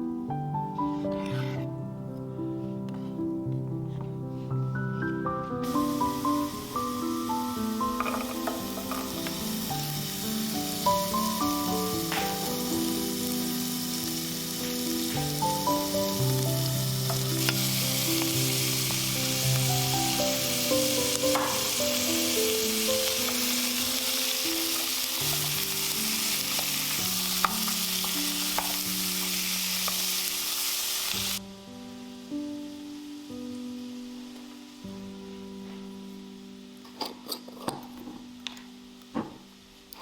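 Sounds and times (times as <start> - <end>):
gentle background music: 0.0 - 40.0
food sizzling in a pan: 5.5 - 37.3.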